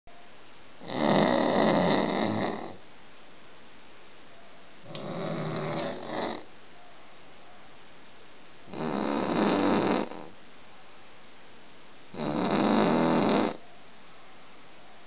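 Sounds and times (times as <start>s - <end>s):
man snoring heavily: 0.8s - 2.8s, 4.9s - 6.5s, 8.7s - 10.3s, 12.2s - 13.6s.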